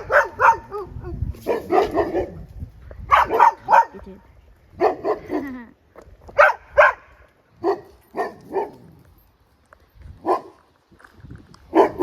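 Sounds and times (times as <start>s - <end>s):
dogs barking: 0.0s - 2.5s, 3.1s - 4.0s, 4.8s - 5.5s, 6.4s - 8.8s, 10.2s - 10.6s, 11.7s - 12.0s.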